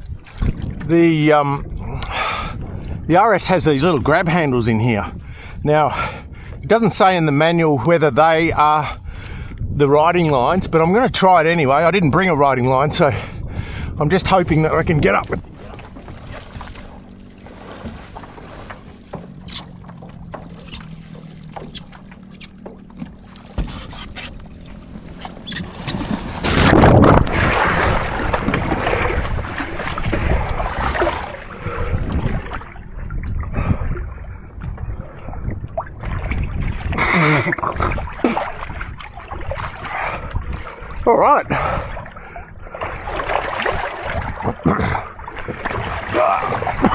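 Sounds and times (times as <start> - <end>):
water lapping: 0.0 - 9.6, 10.3 - 46.9
water splashing and sloshing: 0.0 - 46.9
small knocks on boat: 15.4 - 27.3
loud splash: 25.6 - 32.7, 36.0 - 40.1, 42.7 - 46.9.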